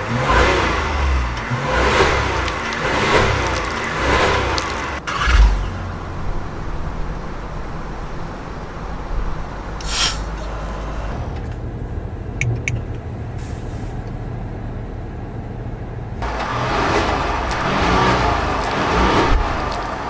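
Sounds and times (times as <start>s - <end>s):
engine and exhaust rumbling: 0.0s - 20.0s
short hiss: 9.8s - 11.1s.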